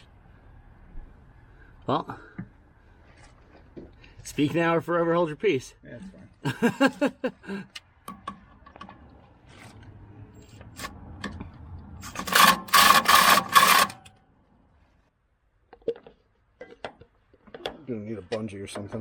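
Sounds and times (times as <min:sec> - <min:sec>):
loud mechanical rattling: 0:12.0 - 0:14.1.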